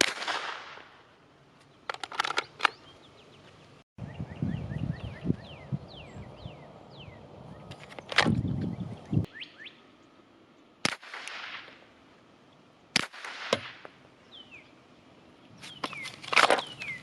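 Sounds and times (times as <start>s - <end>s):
pistol shots with echo: 0.0s - 1.0s, 10.8s - 11.8s, 13.0s - 13.8s
sharp thin crack: 0.0s - 1.1s, 10.8s - 11.9s, 13.0s - 14.0s, 15.6s - 16.8s
birds chirping: 1.3s - 10.8s, 11.8s - 12.9s, 13.8s - 17.0s.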